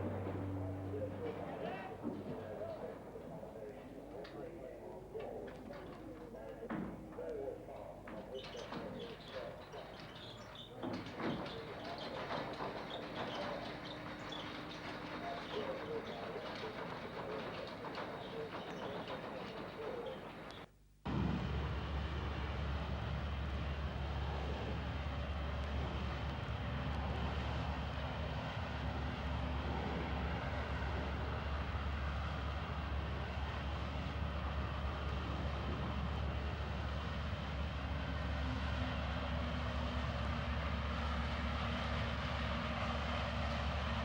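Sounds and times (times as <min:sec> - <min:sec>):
heavy motor droning: 0:00.0 - 0:04.5, 0:06.4 - 0:20.7.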